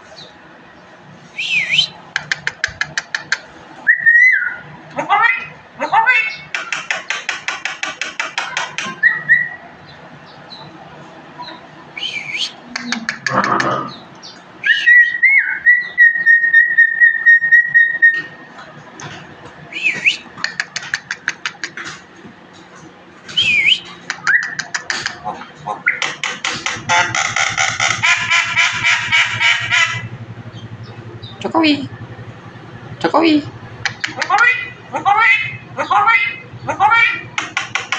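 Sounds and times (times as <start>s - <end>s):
songbird whistling and chattering: 1.4s - 4.6s, 8.9s - 9.6s, 11.4s - 18.4s, 19.7s - 21.8s, 23.3s - 25.2s.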